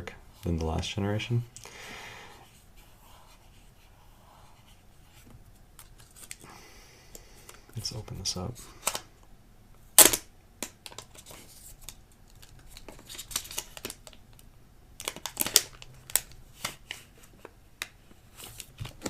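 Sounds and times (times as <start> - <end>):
plastic wrapping crinkling: 15.0 - 17.1.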